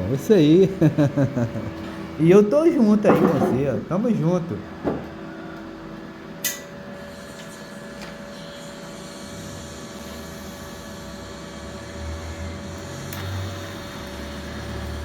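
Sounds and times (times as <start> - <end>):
welding arc hissing and humming: 6.4 - 15.0.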